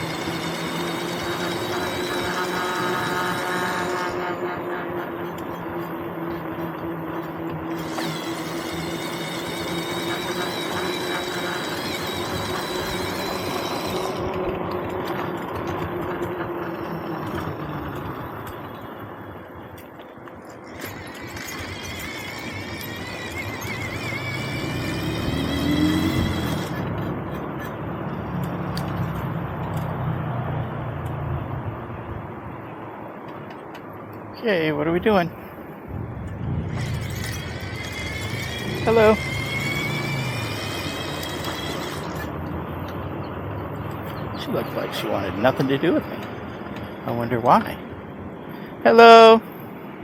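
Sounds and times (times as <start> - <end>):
motorcycle engine running: 0.0 - 19.6, 20.6 - 28.2, 36.3 - 42.4
road noise: 0.0 - 50.0
vehicle hum: 0.0 - 50.0
high thin squeal: 20.8 - 26.8
wind noise: 35.3 - 42.4.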